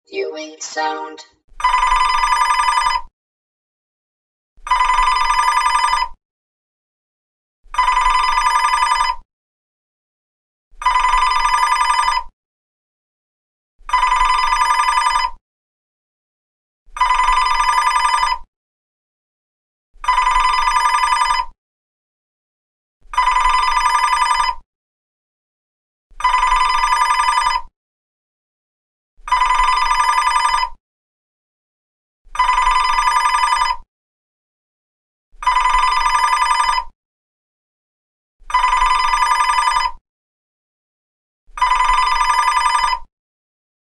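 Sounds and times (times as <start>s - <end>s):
telephone ringing: 0.1s - 1.2s, 38.5s - 39.9s, 41.6s - 43.1s.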